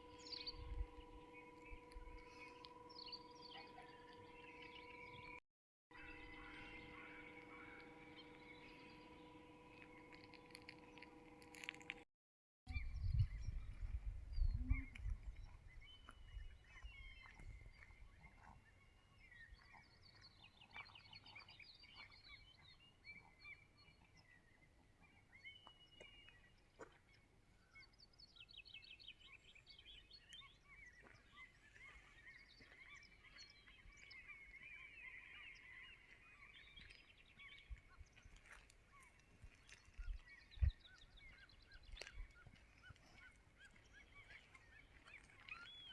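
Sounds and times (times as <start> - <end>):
low rumble on microphone: 0.0 - 5.4, 12.7 - 17.6
birds calling and singing: 0.0 - 12.0, 12.7 - 45.9.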